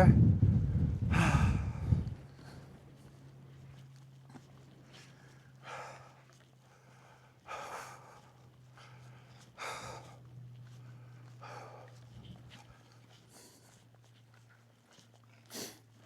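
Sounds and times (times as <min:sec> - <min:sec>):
faint low hum: 0:00.0 - 0:16.0
person breathing close: 0:01.1 - 0:02.1.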